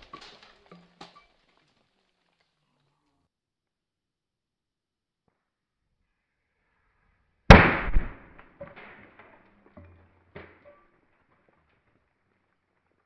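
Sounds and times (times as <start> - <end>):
pressurised can bursting bang: 7.5 - 9.0.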